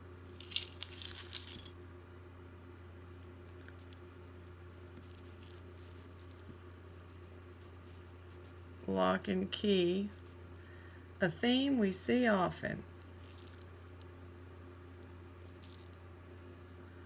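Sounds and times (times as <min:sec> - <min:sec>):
low electrical hum: 0:00.0 - 0:17.0
metal jewelry clinking: 0:00.3 - 0:01.9, 0:03.1 - 0:09.4, 0:10.1 - 0:11.9, 0:12.9 - 0:14.1, 0:15.0 - 0:16.1.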